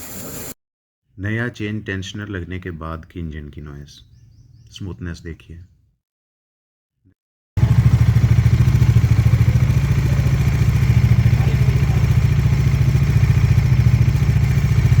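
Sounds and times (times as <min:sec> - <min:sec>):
motorcycle engine running: 0:07.6 - 0:15.0.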